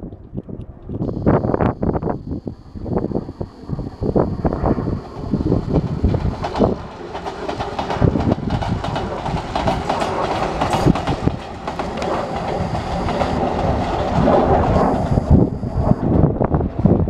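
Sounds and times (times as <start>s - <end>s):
electric train running past: 2.6s - 16.0s.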